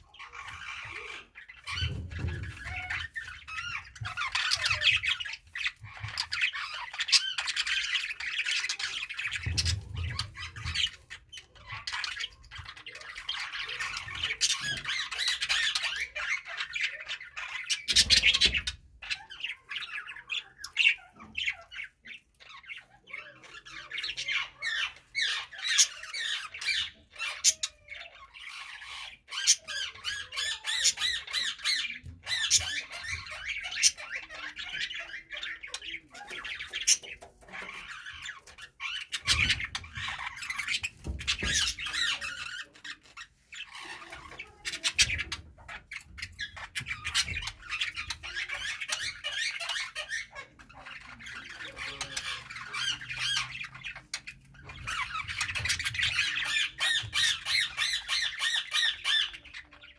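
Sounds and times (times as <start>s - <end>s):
budgerigars chattering: 0.0s - 59.9s.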